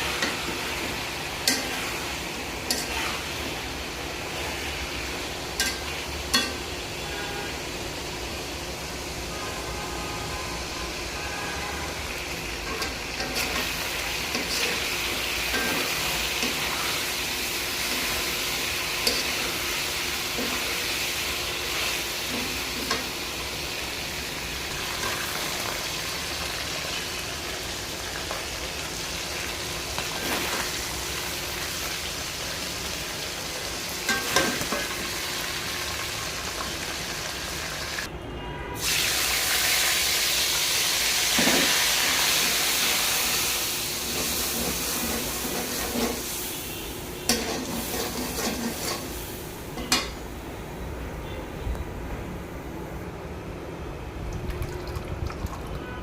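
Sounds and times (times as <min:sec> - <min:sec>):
curry sizzling in a pan: 0:00.0 - 0:38.1, 0:38.8 - 0:50.3.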